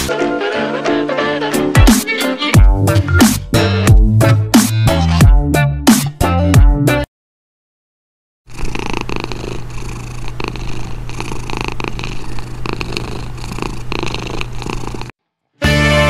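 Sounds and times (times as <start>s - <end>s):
cat purring: 8.5s - 15.2s.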